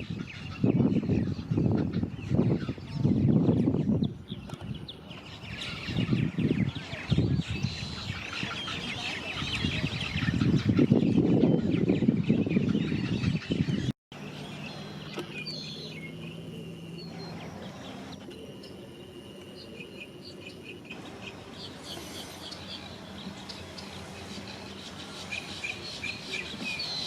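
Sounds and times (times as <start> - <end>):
birds chirping: 0.0 - 27.0
faint low hum: 14.2 - 26.9.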